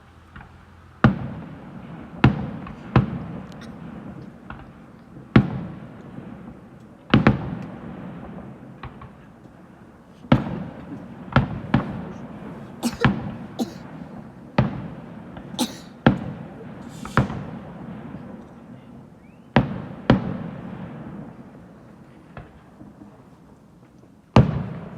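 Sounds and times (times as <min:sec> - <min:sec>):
fireworks bursting with echoes: 0:00.3 - 0:24.9
fireworks hiss: 0:10.0 - 0:18.4.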